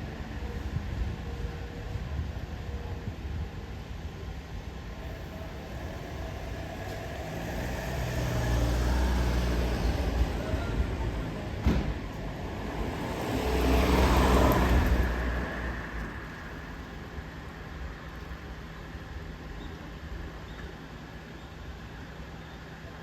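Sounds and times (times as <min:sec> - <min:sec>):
vehicles passing: 0:05.0 - 0:18.4.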